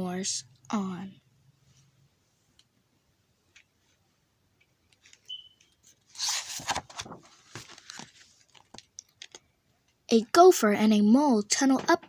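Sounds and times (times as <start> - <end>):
paper page turning: 5.0 - 9.4.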